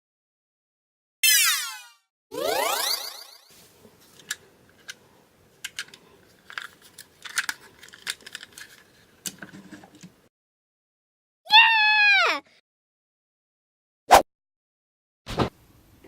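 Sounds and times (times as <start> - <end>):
plastic toys clicking and tapping: 5.6 - 10.2.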